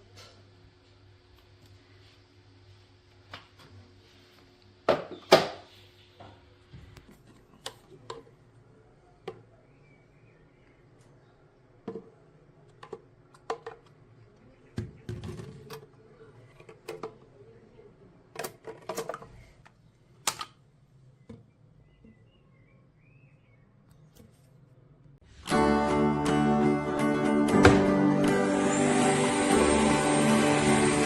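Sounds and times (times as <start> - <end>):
hard objects clicking and knocking: 11.9 - 14.0.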